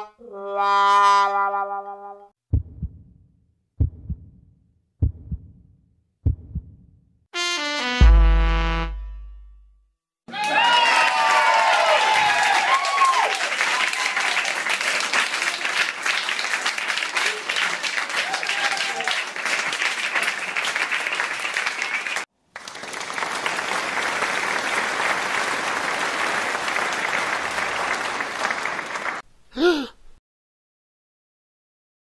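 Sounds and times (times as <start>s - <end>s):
audience applause: 10.3s - 29.2s.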